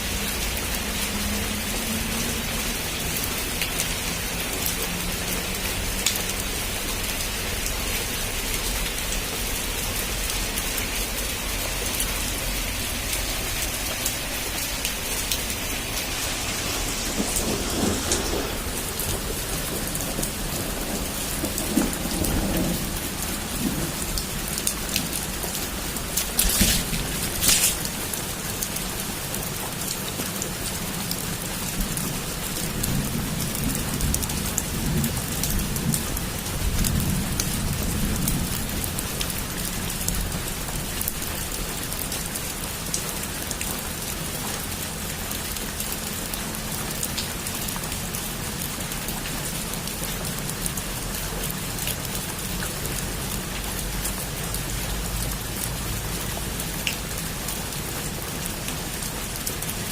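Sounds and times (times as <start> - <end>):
heavy rain on a roof: 0.0 - 59.9
distant thunder rumble: 14.5 - 28.1.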